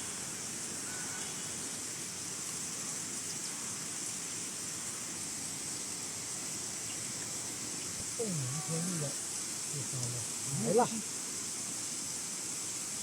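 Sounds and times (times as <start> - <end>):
high-pitched hiss: 0.0 - 13.0
stream rushing: 0.0 - 13.0.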